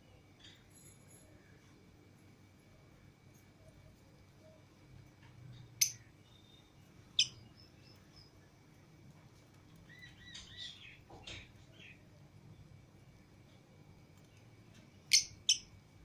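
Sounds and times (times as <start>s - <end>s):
lovebirds chirping: 5.4s - 9.0s, 9.6s - 15.9s.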